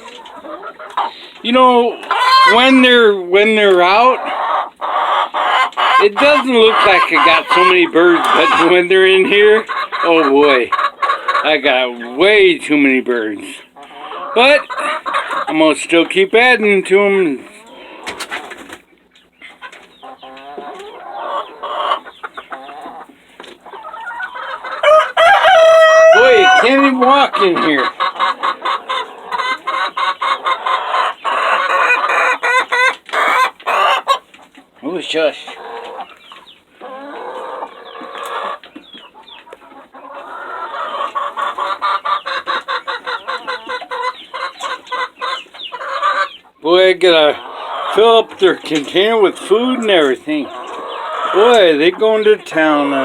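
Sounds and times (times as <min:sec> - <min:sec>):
chickens clucking and squawking: 0:00.0 - 0:53.0.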